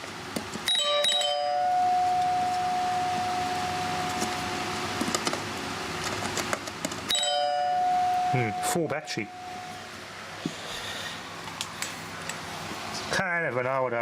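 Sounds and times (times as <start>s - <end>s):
ding-dong door chime: 0.7s - 5.0s, 7.1s - 9.9s.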